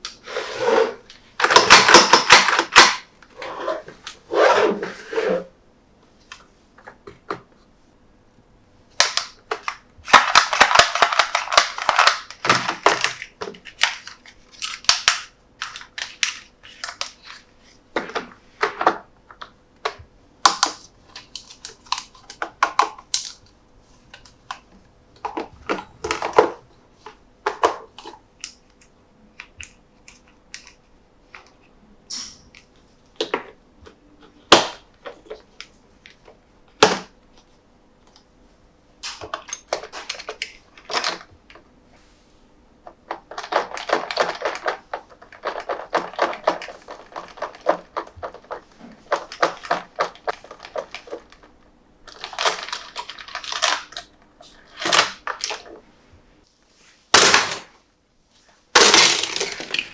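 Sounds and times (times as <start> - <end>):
toy packaging clicks and snaps: 9.0 - 17.3, 20.5 - 23.5, 52.1 - 54.1, 58.8 - 59.9
packaging rustling: 52.1 - 54.0.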